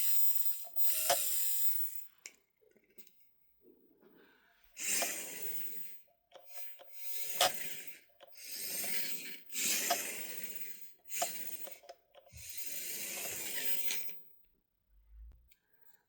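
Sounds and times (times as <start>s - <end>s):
toy car motor whirring: 0.0s - 2.2s, 4.8s - 14.3s.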